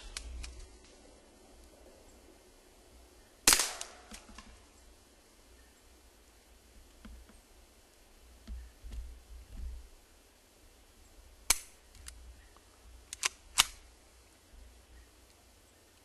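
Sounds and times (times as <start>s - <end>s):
suppressed pistol shots: 3.5s - 4.3s.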